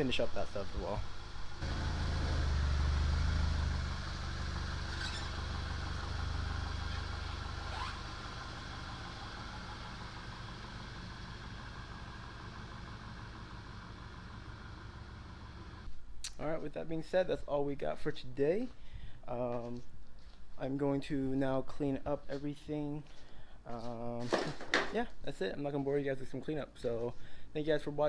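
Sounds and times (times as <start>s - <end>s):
car engine idling: 0.6s - 15.9s.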